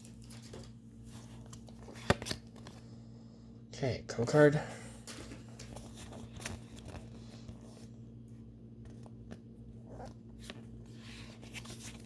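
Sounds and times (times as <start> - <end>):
cards and foil wrapper rustling: 0.0 - 2.8, 5.1 - 8.0, 9.9 - 12.0.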